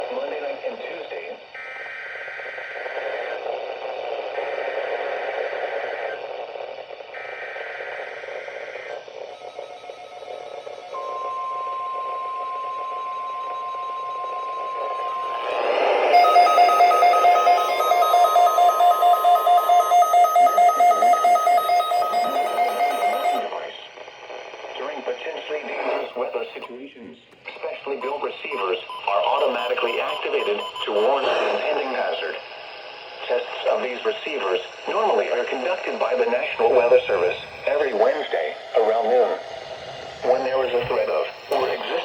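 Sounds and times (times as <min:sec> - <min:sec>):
steady warning alarm tone: 0:09.3 - 0:23.6, 0:28.0 - 0:32.6, 0:40.3 - 0:42.0
pulsing receiver alarm beep: 0:09.4 - 0:23.5, 0:28.0 - 0:32.2, 0:40.4 - 0:42.0
screechy digital header tones: 0:15.0 - 0:23.5.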